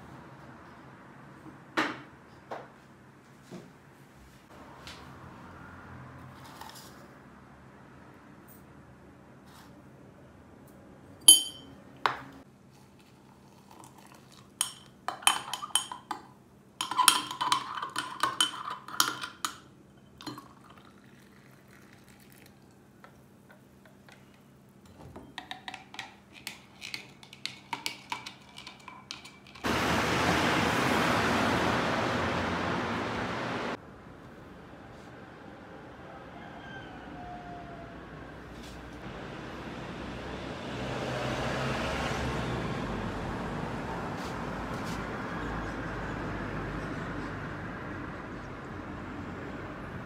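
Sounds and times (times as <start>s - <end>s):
dishes and cutlery clinking: 11.2s - 11.8s, 13.7s - 20.5s
loud steady rushing noise: 29.7s - 33.8s.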